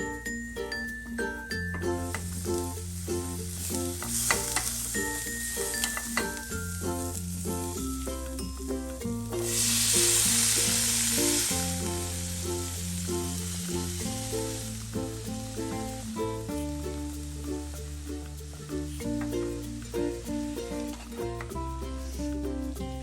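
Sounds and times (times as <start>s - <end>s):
background music with bass: 0.0s - 23.0s
food sizzling in a pan: 1.5s - 22.9s.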